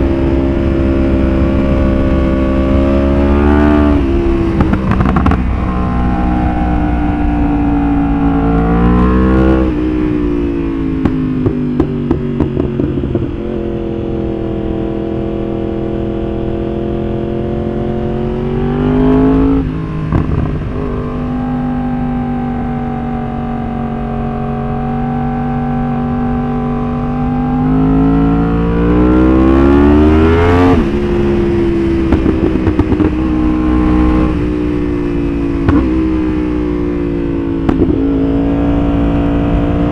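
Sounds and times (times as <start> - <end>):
exhaust pops and crackles: 0.0 - 5.9, 9.6 - 14.0, 19.7 - 21.5, 30.3 - 38.6
motorcycle engine revving: 0.0 - 39.9.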